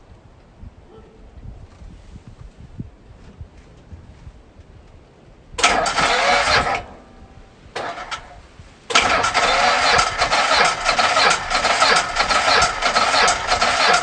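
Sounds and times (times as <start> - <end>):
engine cranking on starter: 5.6 - 14.0.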